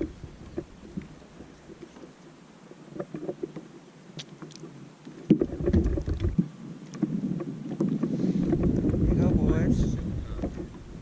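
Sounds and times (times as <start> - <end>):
knocks and rattles in boat: 0.0 - 2.0, 5.2 - 11.0
low rumbling: 8.2 - 11.0.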